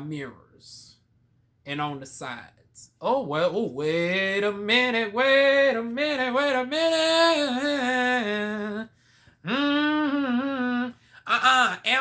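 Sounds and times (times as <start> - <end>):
woman vocalizing: 9.4 - 12.0.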